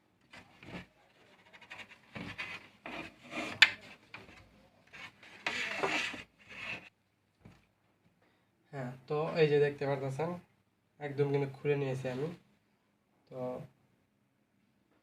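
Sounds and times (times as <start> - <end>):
plastic rubbing and scraping: 0.2 - 6.9.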